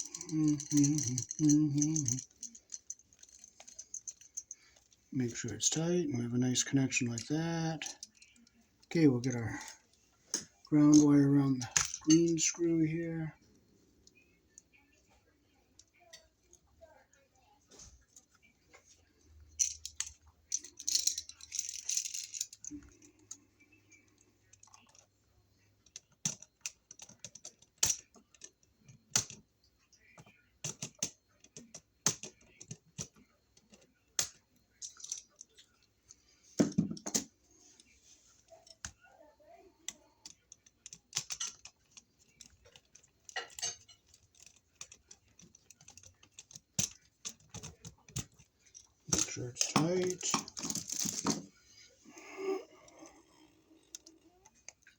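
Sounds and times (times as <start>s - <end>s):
metal wire rattling and scraping: 40.8s - 51.5s.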